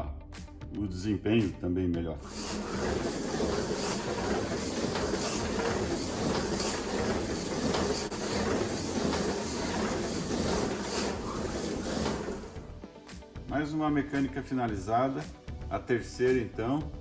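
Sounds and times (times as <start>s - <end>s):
slot car clicking over track joints: 2.2s - 12.6s
slot car motor whirring: 2.2s - 12.7s.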